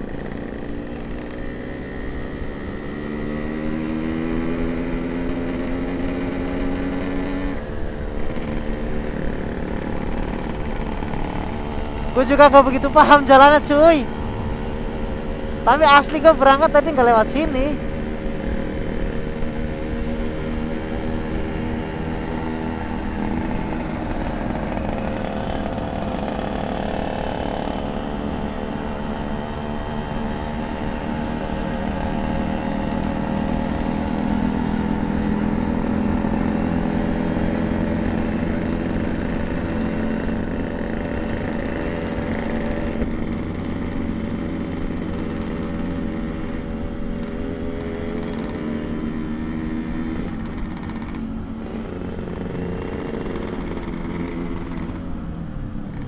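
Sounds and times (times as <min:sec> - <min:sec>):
two-stroke motorcycle engine running: 0:00.0 - 0:56.0.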